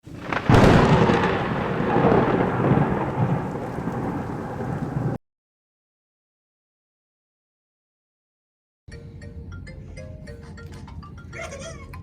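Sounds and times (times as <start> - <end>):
steady rain: 0.0 - 5.2
thunder crack and rumble: 0.1 - 5.2.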